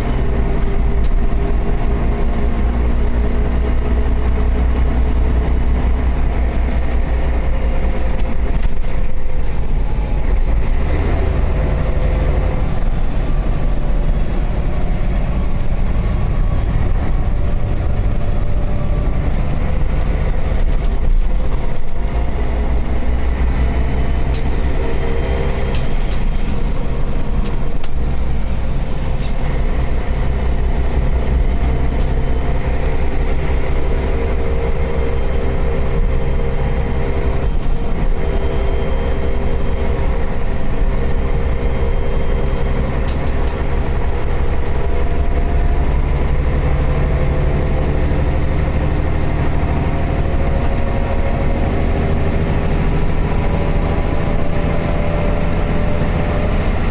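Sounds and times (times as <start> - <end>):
bus engine and road rumble: 0.0 - 56.9.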